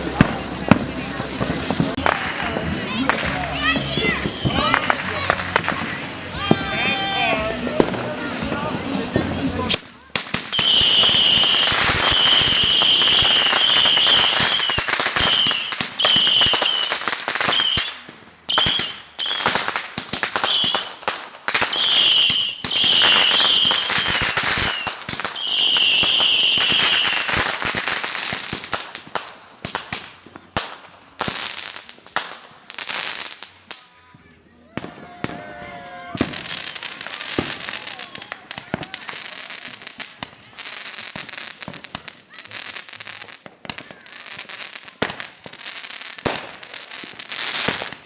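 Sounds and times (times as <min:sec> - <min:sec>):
fireworks crackling pops: 0:00.0 - 0:48.0
fireworks shrill whistle: 0:00.1 - 0:21.0, 0:21.6 - 0:28.7.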